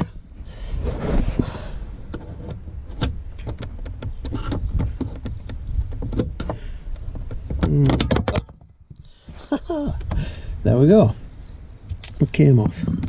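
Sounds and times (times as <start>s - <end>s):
plastic clicks and scrapes: 2.1s - 8.6s.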